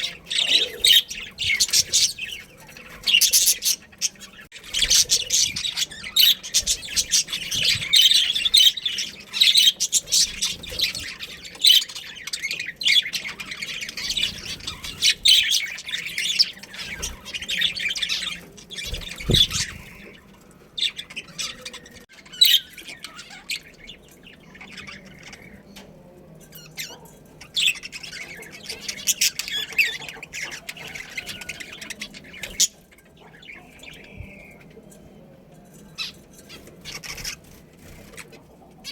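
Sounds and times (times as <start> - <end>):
budgerigars chattering and squawking: 0.0 - 38.9
dull low thump: 19.1 - 19.8.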